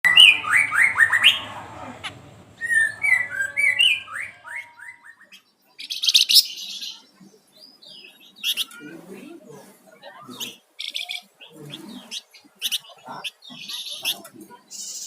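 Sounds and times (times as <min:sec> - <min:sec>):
harsh scratchy bird notes: 0:00.0 - 0:05.2
songbird whistling: 0:02.6 - 0:05.4.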